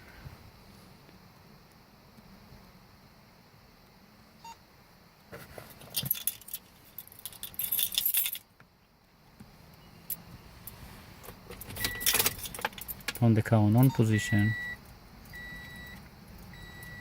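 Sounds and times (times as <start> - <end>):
car keys jangling: 5.7 - 8.4, 11.3 - 13.2.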